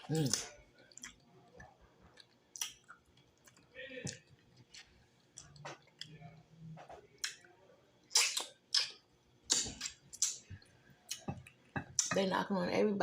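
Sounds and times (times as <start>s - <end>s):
chewing clicks: 0.2s - 6.2s
wet lip smacks: 8.1s - 10.4s.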